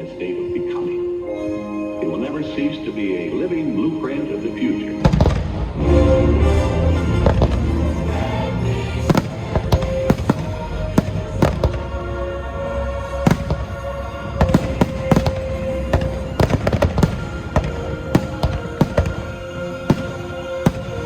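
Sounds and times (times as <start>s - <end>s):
music with held tones: 0.0s - 21.0s
fireworks bangs: 5.0s - 5.8s, 7.2s - 8.3s, 9.0s - 12.0s, 13.2s - 21.0s.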